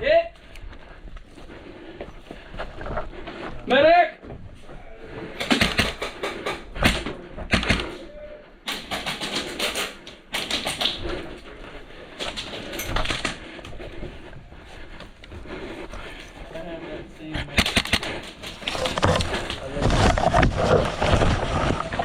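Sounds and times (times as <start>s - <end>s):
airsoft guns firing in bursts: 5.4s - 8.0s, 8.6s - 11.3s, 17.5s - 18.6s.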